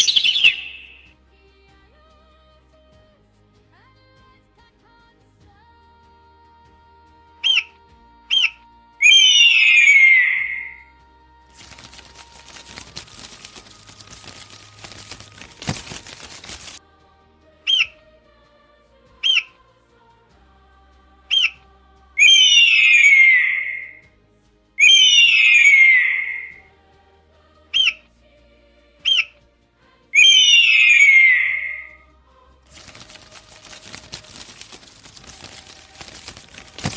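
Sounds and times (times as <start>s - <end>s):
bird calls and squawks: 0.0s - 1.1s, 7.4s - 7.7s, 8.3s - 10.8s, 17.7s - 17.9s, 19.2s - 19.5s, 21.3s - 21.6s, 22.2s - 24.0s, 24.8s - 26.6s, 27.8s - 28.0s, 29.1s - 29.3s, 30.2s - 31.9s
rustling noise: 11.5s - 16.8s, 32.7s - 36.9s.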